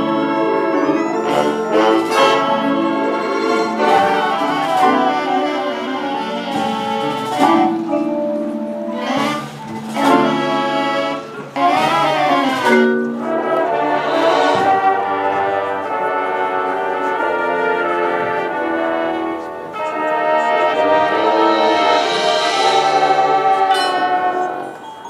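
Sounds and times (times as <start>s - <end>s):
marching band brass chords: 0.0s - 25.0s.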